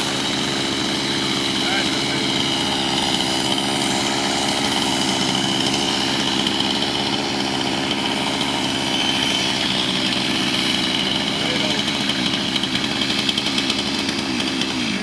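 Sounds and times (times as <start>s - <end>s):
chainsaw engine running: 0.0s - 15.0s.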